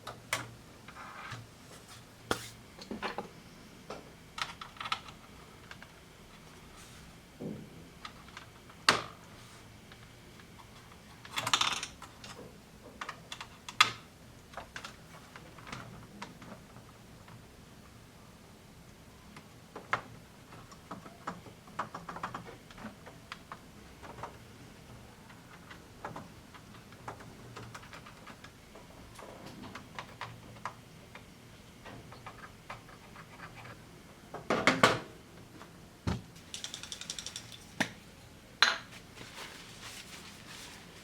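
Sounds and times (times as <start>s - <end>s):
small plastic and metal parts clattering: 36.4s - 37.8s.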